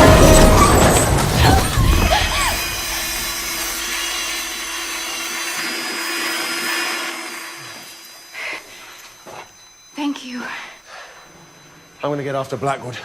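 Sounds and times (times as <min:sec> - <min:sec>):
band saw humming and whining: 0:00.0 - 0:10.2.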